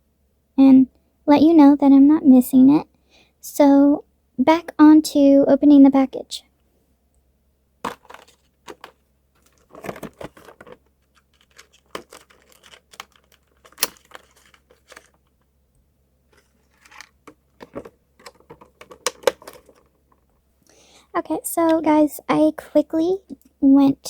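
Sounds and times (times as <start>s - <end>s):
plastic package clicks and crinkling: 7.9s - 15.5s, 16.3s - 20.3s.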